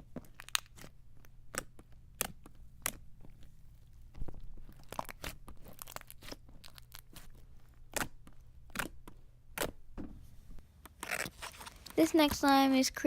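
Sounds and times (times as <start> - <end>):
slime clicking and popping: 0.3 - 3.3.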